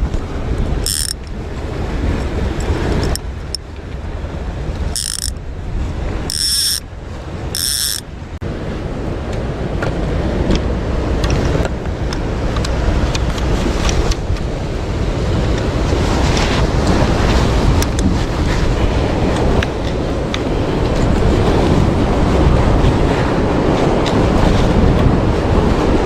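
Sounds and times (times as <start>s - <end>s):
boat engine rumble: 0.0s - 26.0s
water noise: 0.0s - 26.0s
wind: 0.0s - 26.0s.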